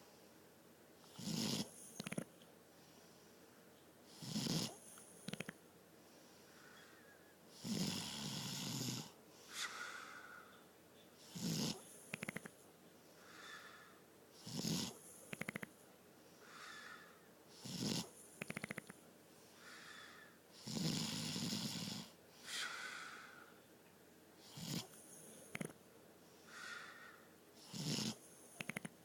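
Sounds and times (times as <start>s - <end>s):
person snoring: 1.1s - 2.3s, 4.1s - 5.5s, 7.6s - 10.1s, 11.2s - 12.5s, 14.4s - 15.7s, 16.6s - 18.9s, 20.6s - 23.2s, 24.4s - 25.8s, 27.6s - 28.9s.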